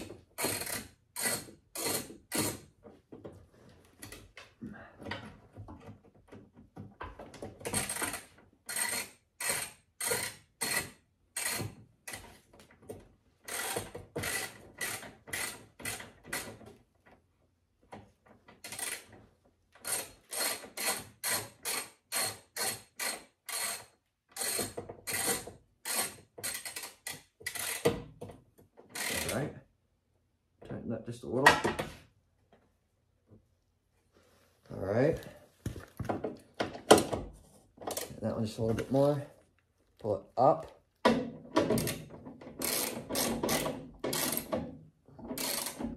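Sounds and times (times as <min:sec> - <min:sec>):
ratchet wrench clicking: 0:07.8 - 0:11.6, 0:19.8 - 0:27.8, 0:29.0 - 0:29.4, 0:42.6 - 0:44.5, 0:45.4 - 0:45.8.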